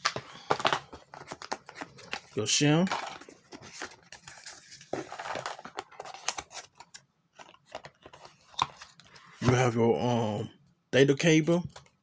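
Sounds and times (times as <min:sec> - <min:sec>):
packaging rustling and crinkling: 0:00.0 - 0:09.6.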